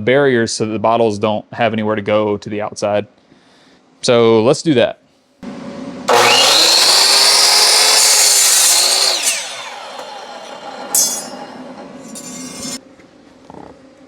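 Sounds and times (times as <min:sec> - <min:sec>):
power tool cutting metal: 0:06.1 - 0:12.8.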